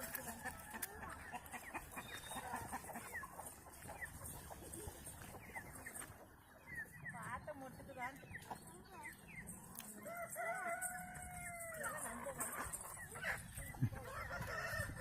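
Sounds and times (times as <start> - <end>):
chickens clucking and cheeping: 0.0 - 15.0.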